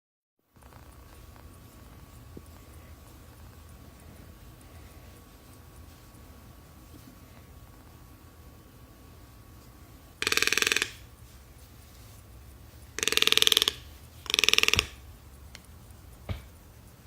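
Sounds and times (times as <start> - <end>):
parrot buzzy rattling calls: 10.2 - 11.4, 12.6 - 16.2.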